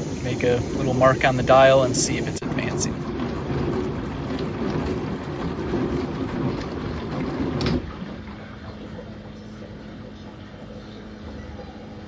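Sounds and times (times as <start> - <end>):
dishwasher running: 0.0 - 12.0
low steady hum: 0.0 - 12.0.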